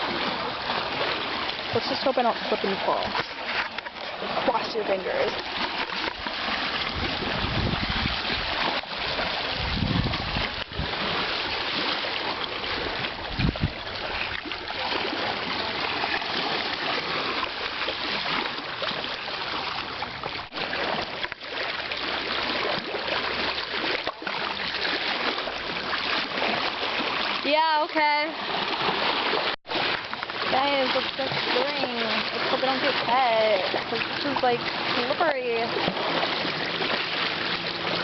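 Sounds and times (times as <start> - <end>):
stream water rushing: 0.0 - 38.0
low rumbles on microphone: 6.8 - 8.6, 9.2 - 11.2, 12.8 - 14.4.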